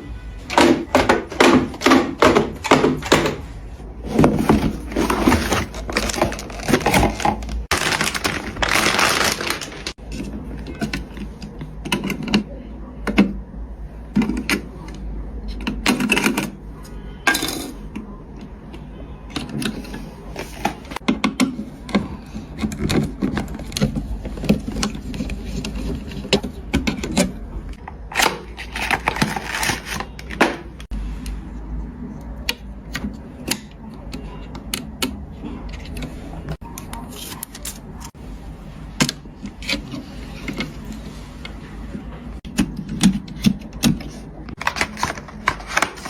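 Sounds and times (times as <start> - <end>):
packaging rustling: 4.0 - 10.0, 28.1 - 30.5, 44.5 - 46.0.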